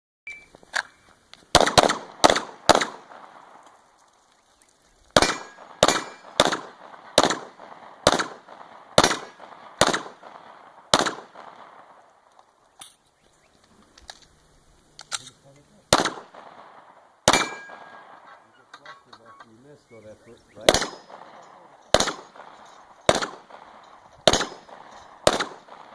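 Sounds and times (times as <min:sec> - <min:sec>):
short beep: 0:00.3 - 0:01.0
pistol shots: 0:01.5 - 0:03.6, 0:05.2 - 0:12.0, 0:15.9 - 0:18.5, 0:20.6 - 0:25.9.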